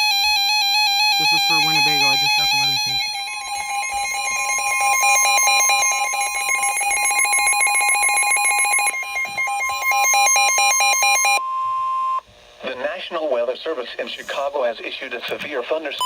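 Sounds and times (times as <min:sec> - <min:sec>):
electronic alarms beeping: 0:00.0 - 0:12.2
steady attention tone: 0:01.0 - 0:12.2.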